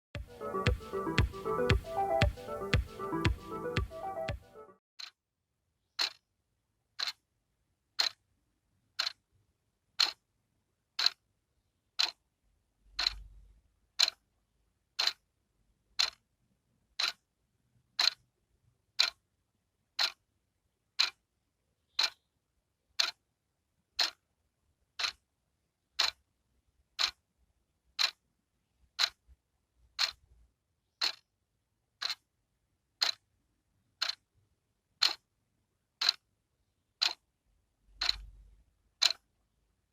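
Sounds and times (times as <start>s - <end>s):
wall clock ticking: 0.2s - 5.2s, 6.0s - 6.2s, 7.0s - 7.2s, 8.0s - 8.2s, 8.9s - 9.3s, 9.9s - 10.2s, 11.0s - 11.2s, 12.0s - 12.2s, 12.8s - 14.3s, 14.9s - 15.3s, 16.0s - 16.2s, 16.9s - 18.3s, 19.0s - 19.2s, 20.0s - 20.2s, 21.0s - 21.2s, 21.8s - 22.3s, 23.0s - 23.2s, 24.0s - 24.3s, 24.9s - 25.3s, 26.0s - 26.3s, 27.0s - 27.3s, 27.9s - 28.3s, 28.9s - 30.4s, 31.0s - 31.3s, 32.0s - 32.3s, 33.0s - 33.3s, 34.0s - 34.3s, 35.0s - 35.3s, 36.0s - 36.3s, 37.0s - 37.2s, 37.9s - 39.4s.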